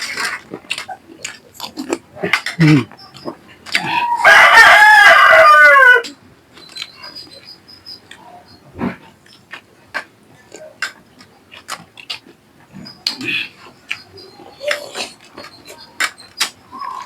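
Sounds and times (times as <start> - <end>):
clicks and clatter of eating: 0.0 - 4.0, 8.0 - 17.0
rooster crowing: 3.8 - 6.1.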